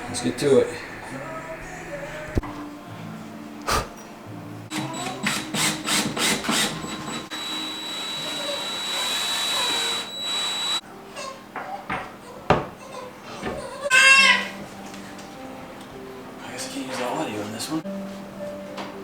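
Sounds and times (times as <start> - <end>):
power drill whining: 4.7 - 10.8.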